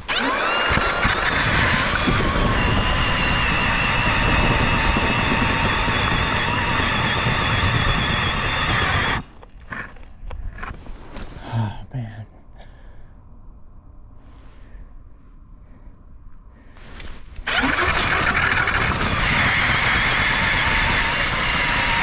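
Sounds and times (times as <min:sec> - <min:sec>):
electric ice auger whining: 0:00.0 - 0:09.9, 0:17.4 - 0:22.0
auger grinding through ice: 0:00.0 - 0:10.0, 0:17.4 - 0:22.0.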